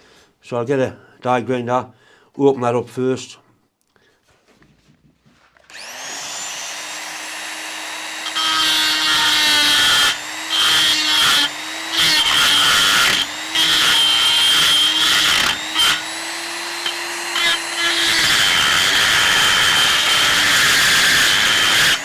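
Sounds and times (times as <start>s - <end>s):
die grinder whining: 5.7s - 22.0s
grinder grinding metal: 5.7s - 22.0s.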